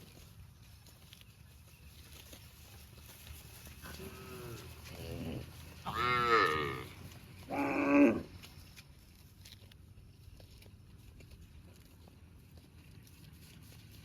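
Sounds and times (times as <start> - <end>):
cows mooing: 3.8 - 8.3.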